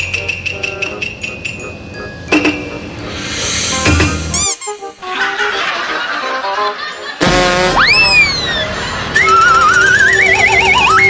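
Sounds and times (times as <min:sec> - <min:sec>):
warbling electronic tone: 0:09.2 - 0:11.0.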